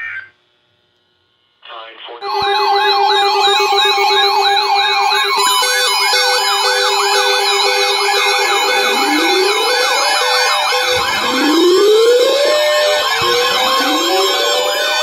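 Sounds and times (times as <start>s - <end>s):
repeating beep: 2.2s - 15.0s
slow rising siren wail: 2.2s - 15.0s
steady siren tone: 2.2s - 15.0s
warbling siren yelps: 2.2s - 15.0s.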